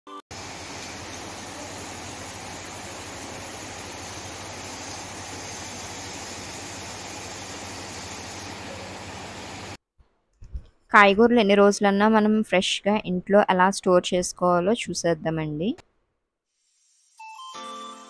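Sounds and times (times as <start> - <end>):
steady static hiss: 0.4 - 9.8.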